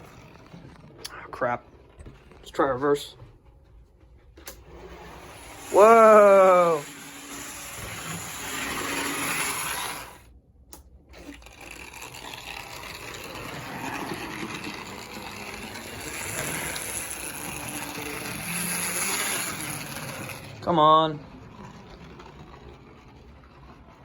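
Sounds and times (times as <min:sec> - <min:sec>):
model train motor whirring: 0:04.5 - 0:10.3, 0:11.1 - 0:24.0.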